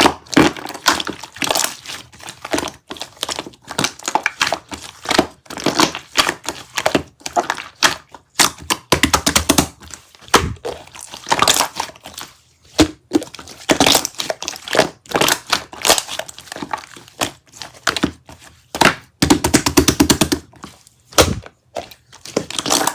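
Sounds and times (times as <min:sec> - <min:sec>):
sharp taps and clicks: 0:08.9 - 0:09.7, 0:19.2 - 0:20.4.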